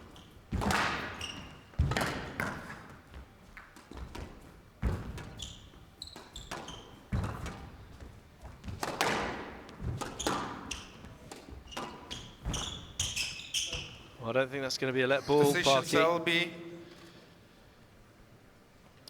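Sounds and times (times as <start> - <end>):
sneakers squeaking on court: 0.1 - 14.2
squash ball cracking off rackets: 8.6 - 14.0.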